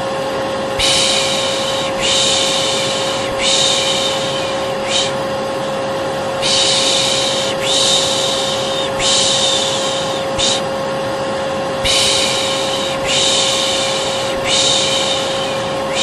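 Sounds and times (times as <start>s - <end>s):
vacuum cleaner whining: 0.0s - 16.0s
person shushing: 0.8s - 5.2s, 6.4s - 10.7s, 11.8s - 16.0s.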